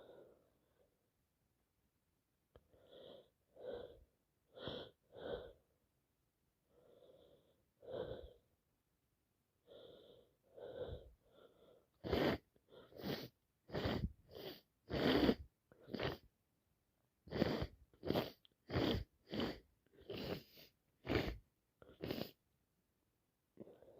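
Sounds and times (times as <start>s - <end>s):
woman sniffing and catching breaths: 0.0s - 0.6s, 9.7s - 16.3s, 17.3s - 22.4s.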